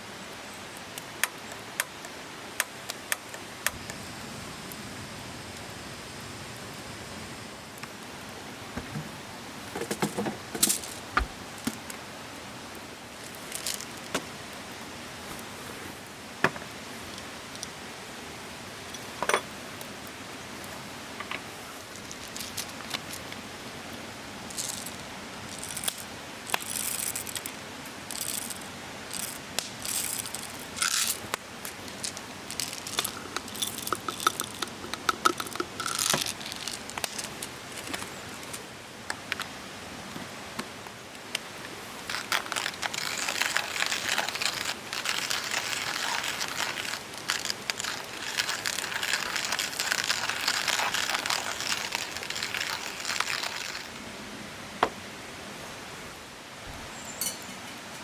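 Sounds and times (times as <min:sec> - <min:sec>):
fire crackling: 0:00.6 - 0:54.1
utensils clinking and rustling: 0:09.8 - 0:11.8, 0:18.9 - 0:19.5, 0:42.1 - 0:53.9, 0:57.0 - 0:58.0.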